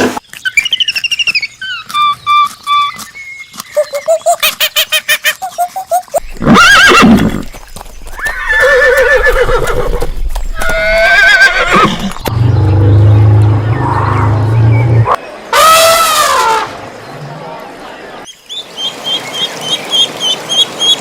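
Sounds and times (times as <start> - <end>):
horses whinnying: 6.2 - 12.3.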